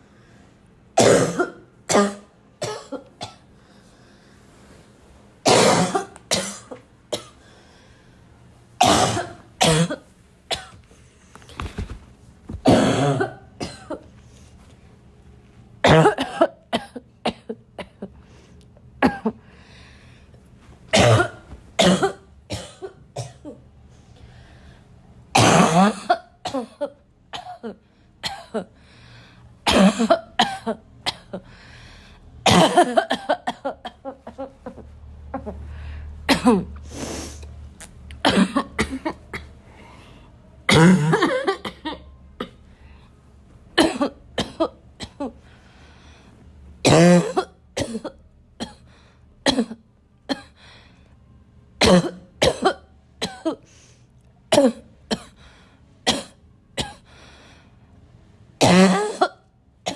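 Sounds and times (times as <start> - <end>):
person coughing harshly: 1.0 - 3.5, 5.4 - 7.4, 8.8 - 10.8, 12.6 - 14.1, 15.8 - 18.1, 19.0 - 19.4, 20.9 - 23.6, 25.4 - 28.7, 29.7 - 31.4, 32.4 - 34.8, 36.3 - 36.8, 38.2 - 39.5, 40.7 - 42.6, 43.8 - 45.4, 46.8 - 50.6, 51.8 - 53.7, 54.5 - 55.4, 56.0 - 57.1, 58.6 - 59.9.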